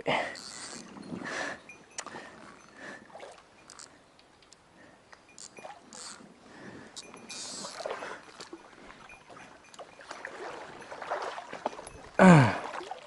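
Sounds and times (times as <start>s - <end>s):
water splashing in a stream: 7.1s - 13.0s
person grunting: 12.2s - 12.6s.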